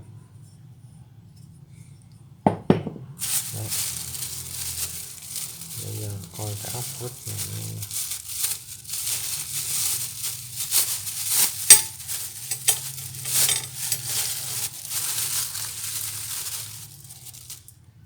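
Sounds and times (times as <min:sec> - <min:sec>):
plastic bag rustling: 0:03.2 - 0:17.8
screws and nuts clinking: 0:09.1 - 0:17.7.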